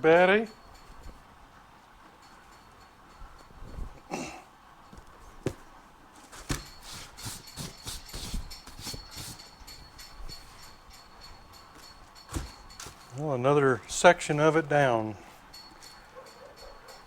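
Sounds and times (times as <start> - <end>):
rustling: 4.8 - 17.0.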